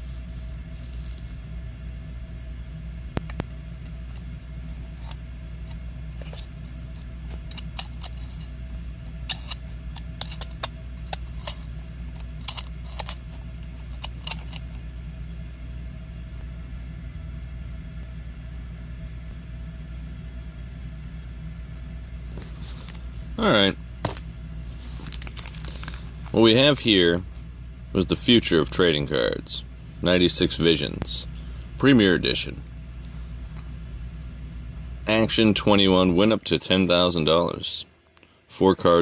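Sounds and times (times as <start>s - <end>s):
low steady hum: 0.0s - 39.0s
sharp clicks and crackles: 9.3s - 14.8s, 24.9s - 26.4s.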